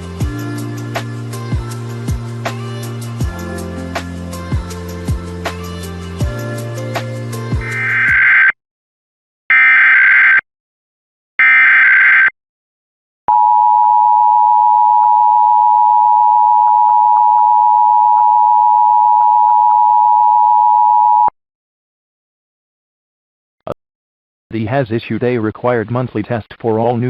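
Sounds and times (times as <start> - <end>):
harsh data screech: 7.6 - 8.5
two-tone alert tone: 7.7 - 8.5.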